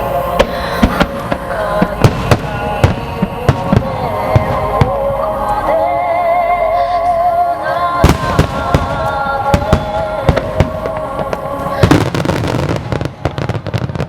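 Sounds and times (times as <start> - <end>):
fireworks booming: 0.0 - 5.2, 8.0 - 14.0
fireworks crackling: 0.0 - 5.7, 8.0 - 14.0
music with wavering melody: 0.0 - 14.0.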